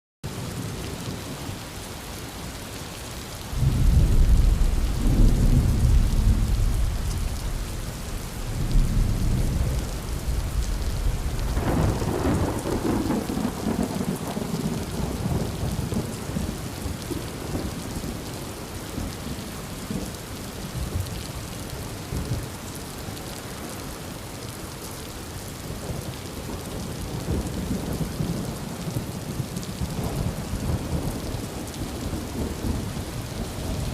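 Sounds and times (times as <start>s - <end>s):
heavy rain falling: 0.2s - 33.9s
thunder crack: 3.5s - 14.2s
thunder rumbling: 3.5s - 17.9s.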